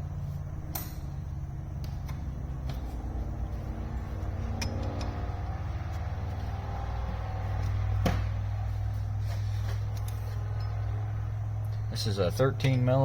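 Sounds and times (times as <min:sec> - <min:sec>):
low machine hum: 0:00.0 - 0:13.0
metal clank: 0:00.7 - 0:01.2, 0:04.4 - 0:05.2.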